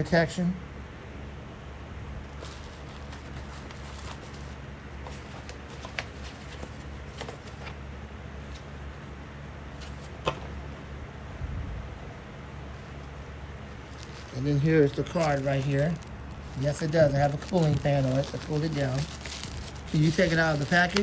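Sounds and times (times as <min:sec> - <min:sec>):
steady low hum: 0:00.0 - 0:21.0
packaging rustling and crinkling: 0:02.3 - 0:07.8, 0:12.8 - 0:21.0.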